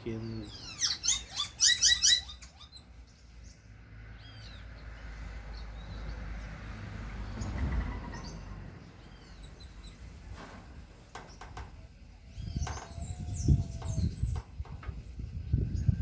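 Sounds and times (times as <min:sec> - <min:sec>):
high bird chirps: 0:00.2 - 0:03.0
wind gusting on microphone: 0:07.2 - 0:16.0.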